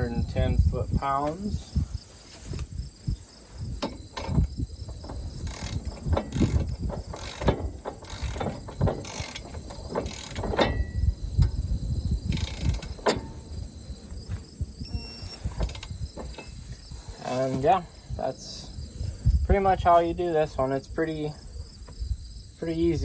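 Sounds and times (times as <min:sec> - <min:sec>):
crickets chirping: 0:00.0 - 0:23.0
socket wrench ratcheting: 0:03.8 - 0:11.6, 0:12.3 - 0:13.4.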